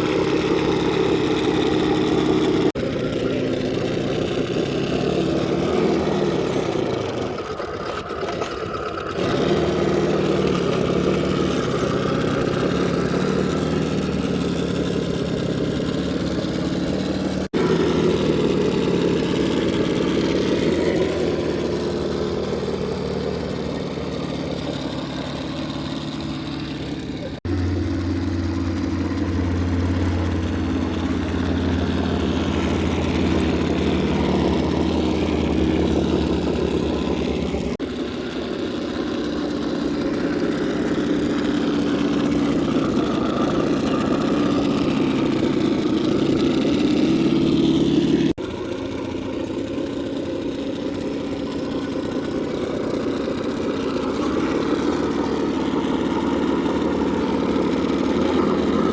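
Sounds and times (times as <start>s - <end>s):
toy car electric motor whining: 0.0s - 58.9s.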